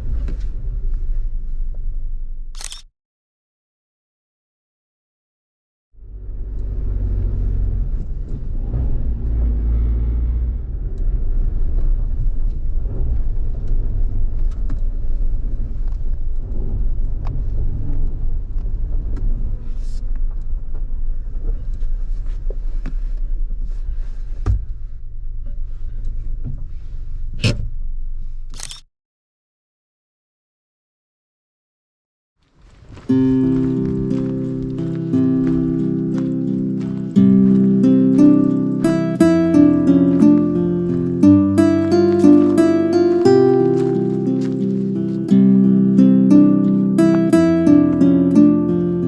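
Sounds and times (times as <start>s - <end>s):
vehicle driving on rough road: 0.0s - 2.6s, 6.0s - 28.8s, 32.5s - 45.7s.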